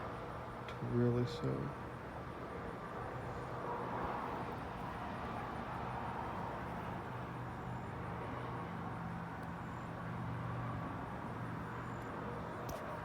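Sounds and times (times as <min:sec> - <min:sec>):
air conditioning unit humming: 0:00.0 - 0:13.0
constant background rush: 0:00.0 - 0:13.0.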